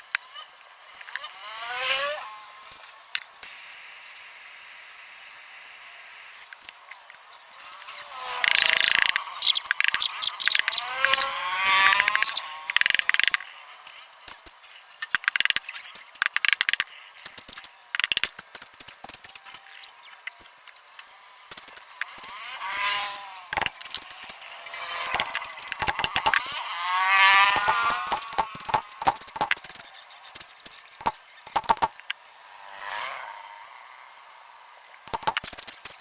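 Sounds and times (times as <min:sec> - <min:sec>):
hand tools and metal parts clinking: 0:08.3 - 0:32.1, 0:35.1 - 0:36.0.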